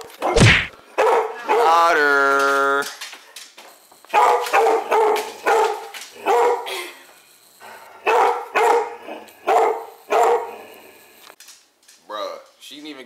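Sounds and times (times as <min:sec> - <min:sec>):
dog barking: 0:00.2 - 0:00.4, 0:01.0 - 0:01.8, 0:04.1 - 0:06.7, 0:08.0 - 0:10.6.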